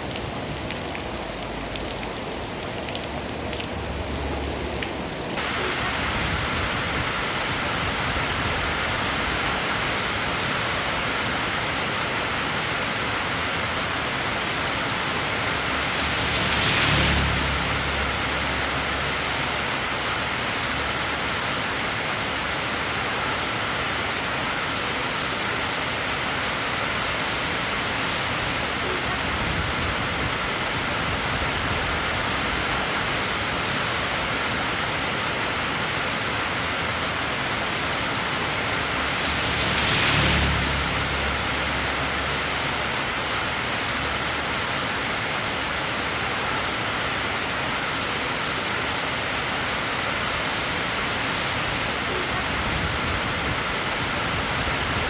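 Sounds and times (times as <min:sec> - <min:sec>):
rain hiss: 0:00.0 - 0:55.0
rain drop ticks: 0:00.1 - 0:05.2.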